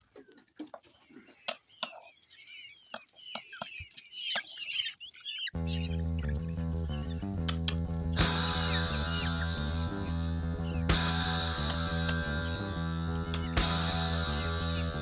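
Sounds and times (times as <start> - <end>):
chicks cheeping: 0.1 - 15.0
loud music: 5.6 - 15.0.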